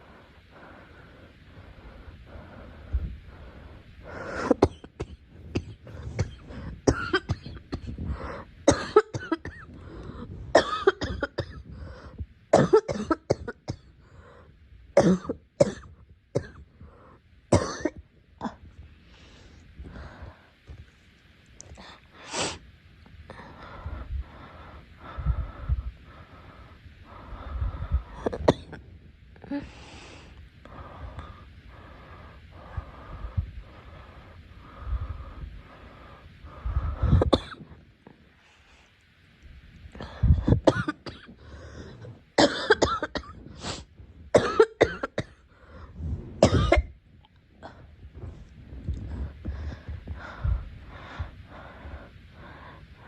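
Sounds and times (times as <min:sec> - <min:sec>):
girl coughing: 0:04.5 - 0:08.0, 0:08.7 - 0:09.7, 0:10.6 - 0:11.7, 0:12.6 - 0:13.8, 0:17.5 - 0:18.6, 0:40.4 - 0:41.3, 0:42.4 - 0:43.4, 0:44.4 - 0:45.4, 0:46.4 - 0:46.9.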